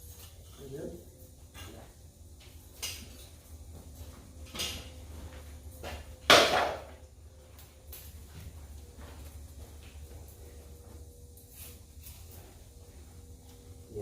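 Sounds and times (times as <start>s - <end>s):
metal clanks and scrapes: 1.5s - 1.9s.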